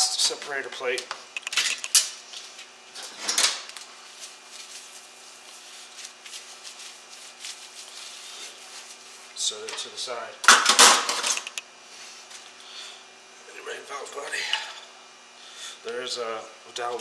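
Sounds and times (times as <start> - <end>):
metal parts knocking and clinking: 1.4 - 2.0
faint steady hum: 3.7 - 17.0.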